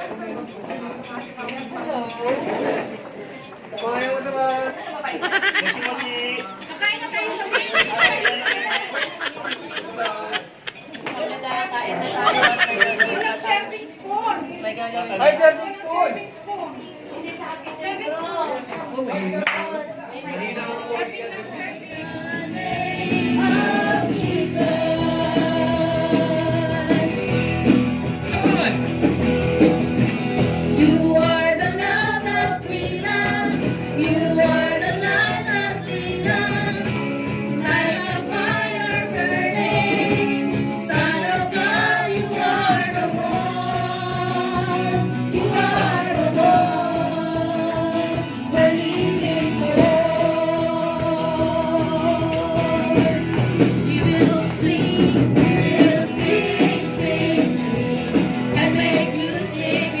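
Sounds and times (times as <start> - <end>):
person singing with guitar: 30.7 - 60.0.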